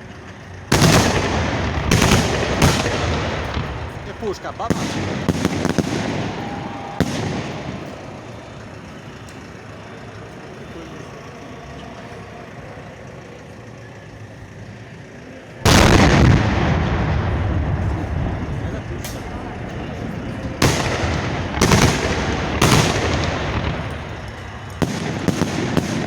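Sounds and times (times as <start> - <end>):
firework bang: 0.7 - 8.3, 15.7 - 26.0
firework launch booms: 0.7 - 8.3, 15.7 - 26.0
low rumble: 15.7 - 25.8.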